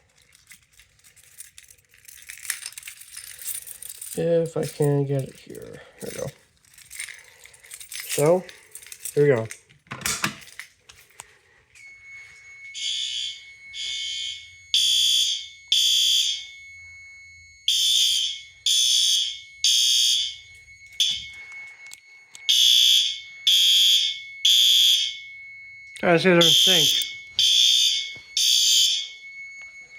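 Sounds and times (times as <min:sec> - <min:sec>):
fire alarm horns pulsing: 0:11.2 - 0:29.9
steady high-pitched tone: 0:11.7 - 0:29.9.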